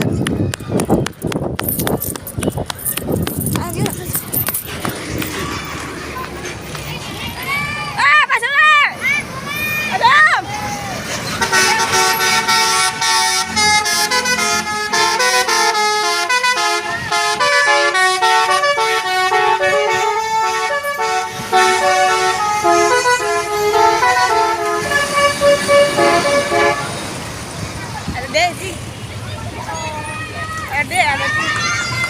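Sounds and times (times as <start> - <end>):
multi-tone bus horns playing melody: 11.3 - 27.1.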